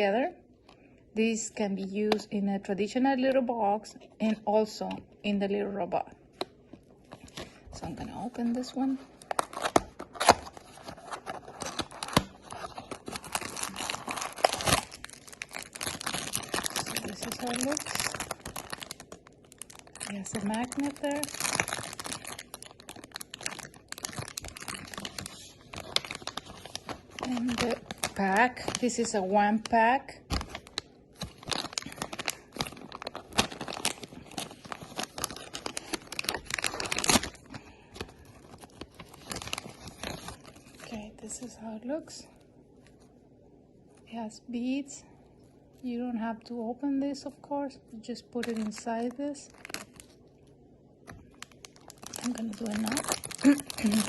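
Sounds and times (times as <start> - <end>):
packaging torn and crinkled by hand: 8.5 - 41.0, 48.3 - 50.3, 51.0 - 54.0.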